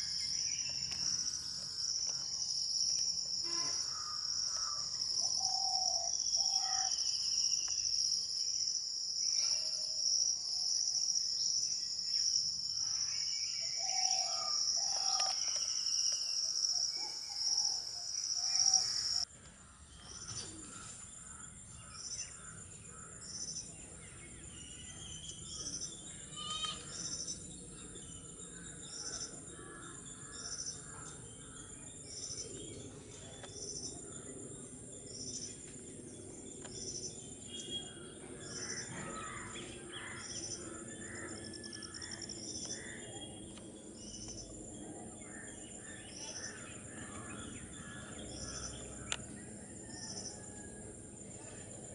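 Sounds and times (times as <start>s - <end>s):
high-pitched insect drone: 0.0s - 5.6s.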